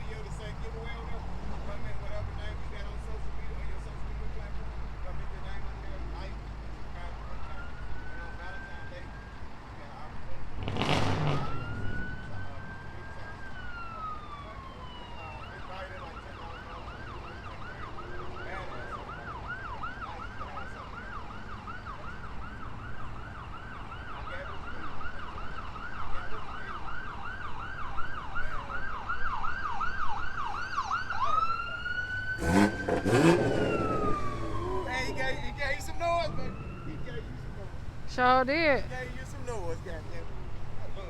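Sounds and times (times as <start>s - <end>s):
electronic siren wailing and yelping: 11.3s - 26.1s, 26.7s - 39.0s.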